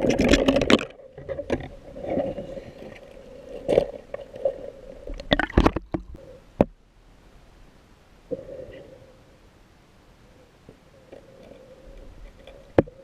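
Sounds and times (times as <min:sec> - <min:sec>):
water splashing and gurgling: 0:00.0 - 0:06.2
faint steady hum: 0:00.0 - 0:13.0.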